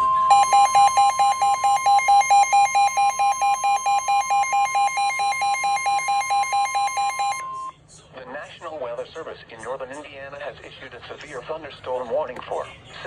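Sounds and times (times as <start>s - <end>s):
steady high alert tone: 0.0s - 7.6s.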